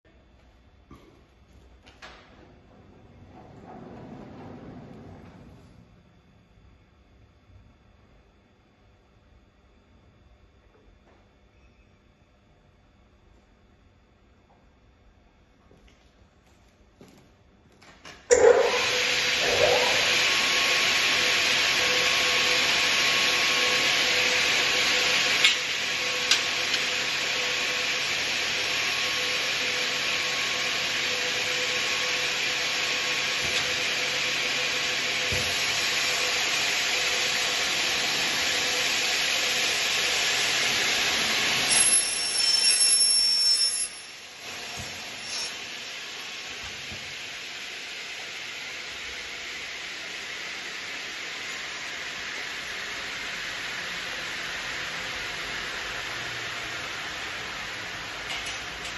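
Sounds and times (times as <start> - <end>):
mitre saw running: 18.3 - 55.6
high squeal: 41.7 - 44.4, 45.1 - 45.6.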